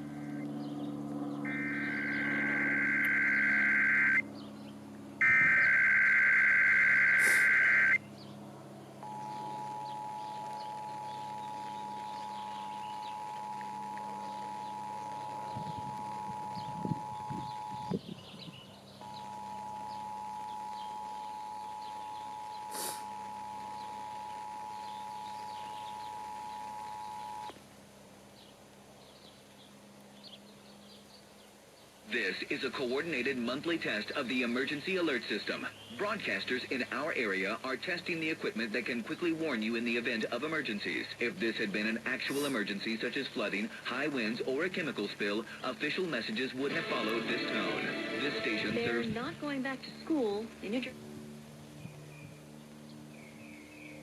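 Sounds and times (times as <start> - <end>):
harsh data buzz: 1.2 - 4.4, 5.1 - 8.2, 9.0 - 27.6
digital data bursts: 1.5 - 4.2, 5.2 - 8.0, 9.0 - 18.0
two-tone attention signal: 1.5 - 4.2, 5.2 - 8.0, 9.0 - 18.0, 19.0 - 27.5
burst of noise: 5.2 - 8.0, 22.6 - 23.2.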